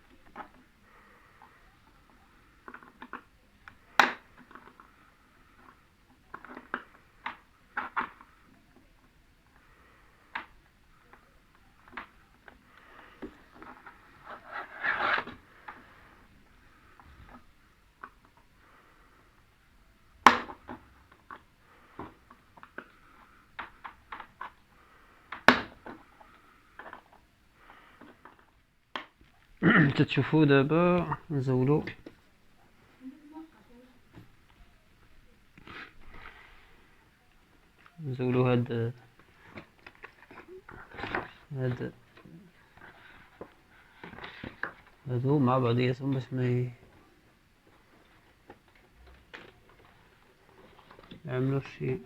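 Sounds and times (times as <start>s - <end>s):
sharp knocks on tv parts: 25.4s - 25.8s.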